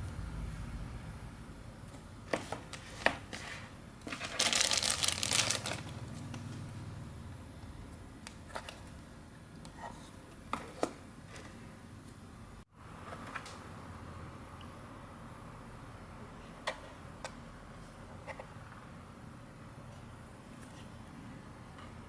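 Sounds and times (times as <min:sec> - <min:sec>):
packaging rustling: 0:02.4 - 0:06.0.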